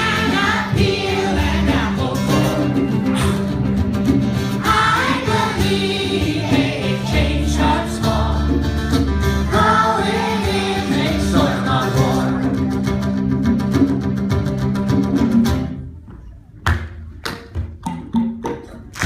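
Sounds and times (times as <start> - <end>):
singing with instrumental backing: 0.0 - 13.0.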